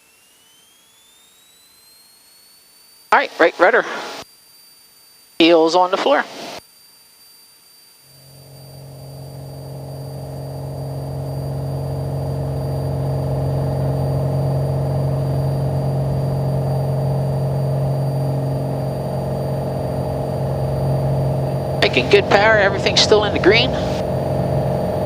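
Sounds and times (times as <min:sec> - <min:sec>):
piston airplane engine droning: 0:00.0 - 0:02.9, 0:08.2 - 0:25.0.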